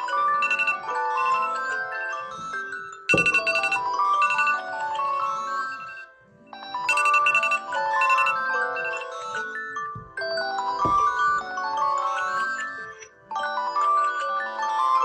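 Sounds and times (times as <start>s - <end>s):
chiming alarm melodies: 0.0s - 15.0s
thump: 3.1s - 3.5s, 10.8s - 11.4s.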